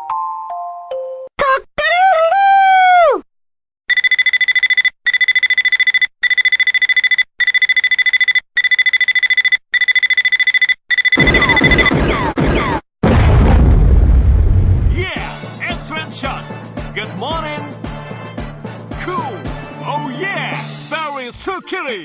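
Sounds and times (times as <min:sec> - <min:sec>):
alarm clock beeping: 0:03.9 - 0:11.9.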